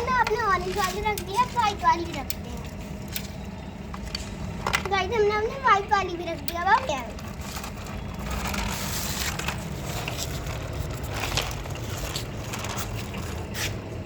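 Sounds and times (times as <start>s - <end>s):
plastic toy vehicles scraping: 0.0s - 3.0s, 4.0s - 13.9s
sharp plastic clicks: 0.2s - 5.1s, 6.3s - 8.7s.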